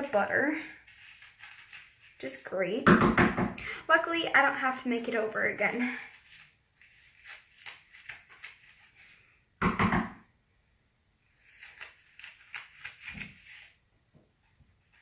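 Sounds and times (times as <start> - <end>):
louder knock: 9.6 - 10.2.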